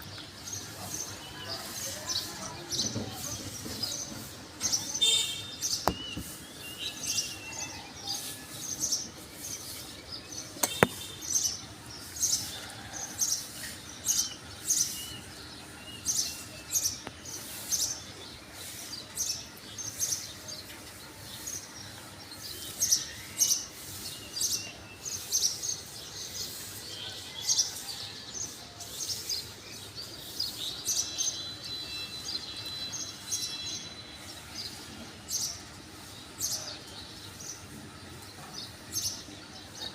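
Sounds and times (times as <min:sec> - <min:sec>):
small birds chirping: 0:00.0 - 0:27.8.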